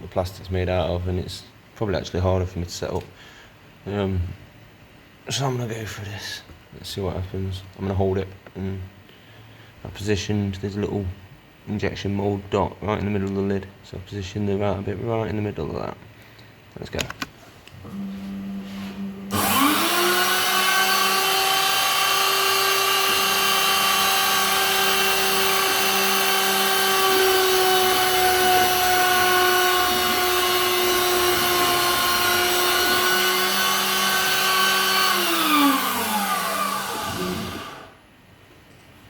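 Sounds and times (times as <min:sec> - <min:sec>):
low steady hum: 0:00.0 - 0:19.4
bit cutting plastic: 0:19.3 - 0:37.9
router spindle whine: 0:19.3 - 0:38.0.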